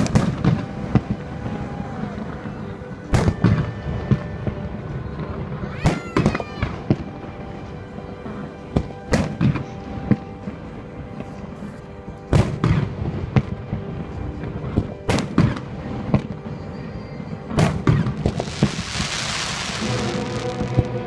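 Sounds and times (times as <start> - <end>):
crackling fireworks: 0.0 - 21.0
music: 0.0 - 21.0.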